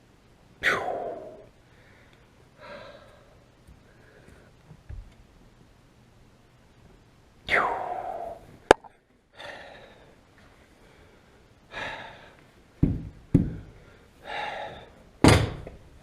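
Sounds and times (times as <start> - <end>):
dull knocks and thumps: 12.8 - 13.7.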